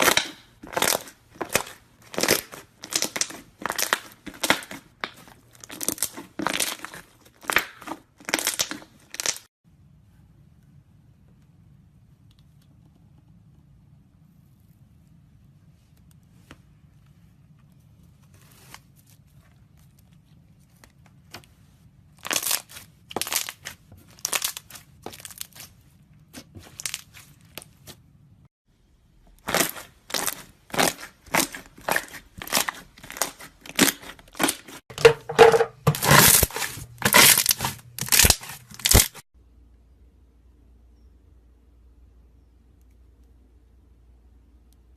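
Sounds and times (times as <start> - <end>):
slime squishing: 0.0 - 9.5, 17.8 - 28.2, 29.4 - 39.2.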